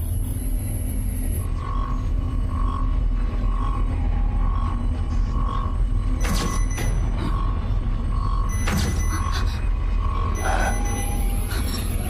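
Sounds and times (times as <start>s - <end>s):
deep steady drone: 0.0s - 12.0s
beeping tone: 6.2s - 12.0s.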